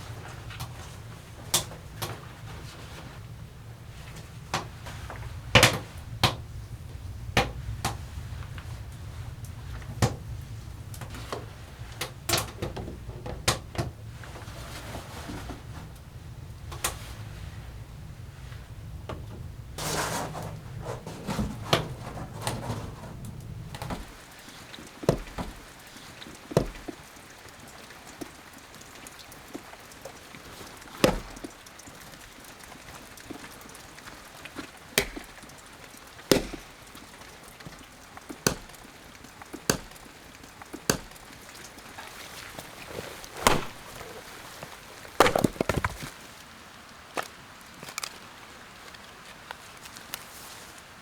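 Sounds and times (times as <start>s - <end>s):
wood being chopped: 25.1s - 25.6s, 26.6s - 27.0s, 35.0s - 35.4s, 36.3s - 36.8s, 38.3s - 38.9s, 39.5s - 40.1s, 40.7s - 41.2s, 43.4s - 44.2s, 45.1s - 46.2s.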